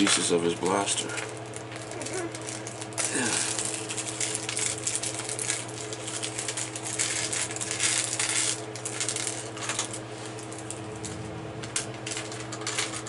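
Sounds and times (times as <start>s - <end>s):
low hum: 9.2s - 13.0s.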